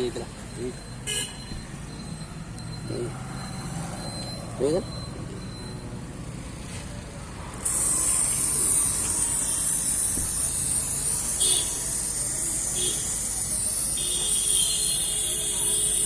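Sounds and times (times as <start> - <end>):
aerosol spray can hissing: 7.6 - 16.0.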